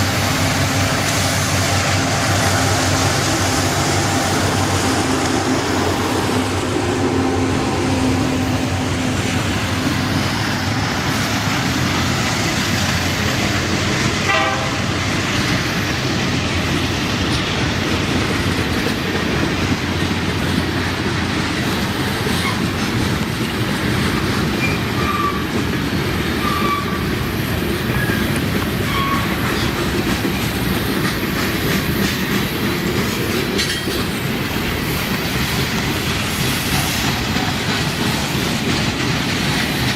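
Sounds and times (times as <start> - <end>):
freight train cars rolling: 0.0 - 39.9
wheels clicking over rail joints: 0.0 - 39.9
wheel squeals: 24.5 - 25.6, 26.3 - 29.9.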